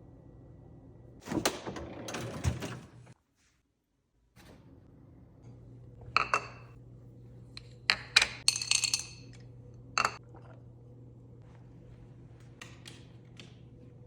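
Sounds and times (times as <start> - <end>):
low steady hum: 4.4 - 14.0.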